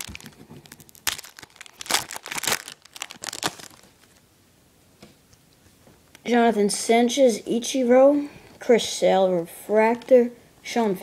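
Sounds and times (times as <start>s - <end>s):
plastic wrapper tearing and crinkling: 0.0s - 4.2s.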